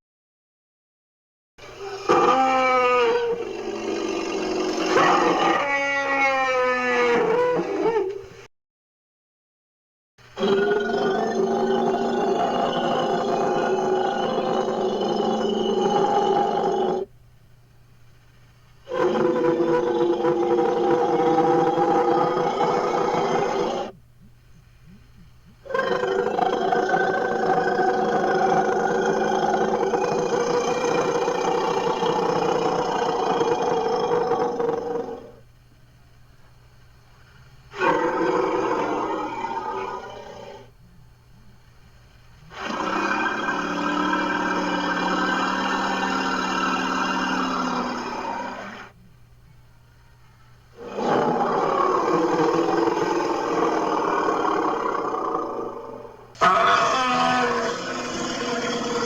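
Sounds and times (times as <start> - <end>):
long pitched animal roar: 1.7 - 8.1, 10.4 - 17.1, 18.9 - 23.9, 25.7 - 35.4, 37.7 - 40.7, 42.5 - 48.9, 50.8 - 59.0.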